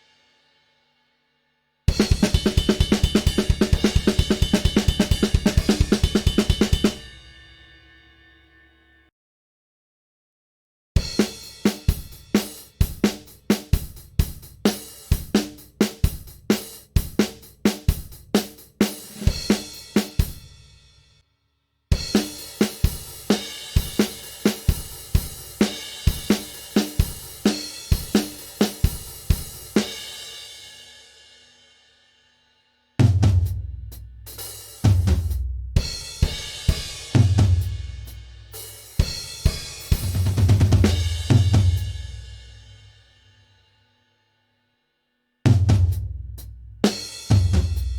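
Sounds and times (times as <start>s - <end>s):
kick drum: 1.9s - 7.0s
snare drum: 1.9s - 7.2s, 11.2s - 20.4s, 22.0s - 29.9s, 34.3s - 35.4s, 36.1s - 42.2s, 46.8s - 47.9s.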